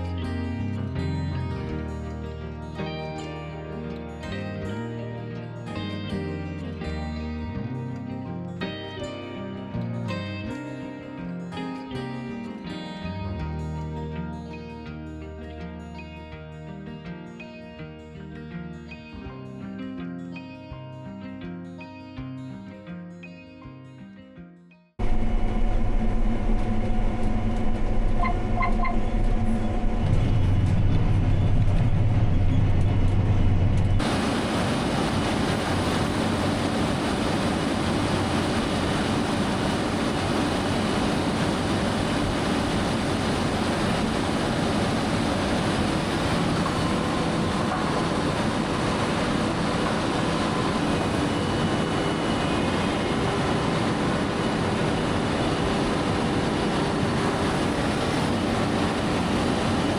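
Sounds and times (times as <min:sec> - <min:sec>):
farm machinery engine running: 0:25.0 - 0:59.9.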